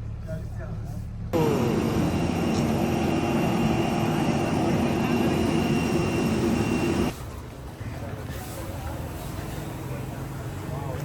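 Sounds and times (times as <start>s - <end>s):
engine drone: 1.3s - 7.1s
constant whine: 1.4s - 7.2s.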